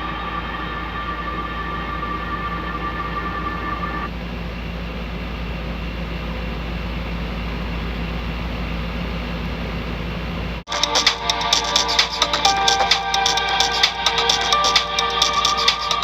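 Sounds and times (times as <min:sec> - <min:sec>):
faint high steady tones: 0:00.0 - 0:04.1, 0:10.7 - 0:16.0.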